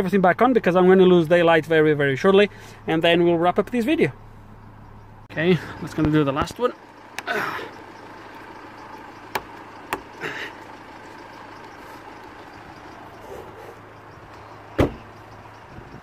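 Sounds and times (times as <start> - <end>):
car trim clicks and knocks: 9.3 - 10.1, 14.8 - 15.2.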